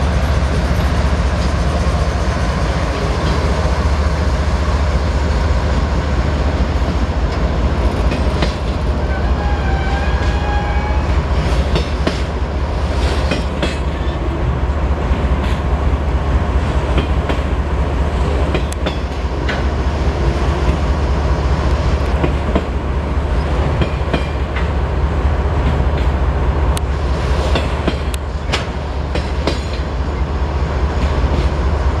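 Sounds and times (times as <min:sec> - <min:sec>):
freight train rumbling past: 0:00.0 - 0:32.0
wheels clacking over rail joints: 0:06.5 - 0:14.6, 0:18.2 - 0:19.8, 0:26.8 - 0:30.0.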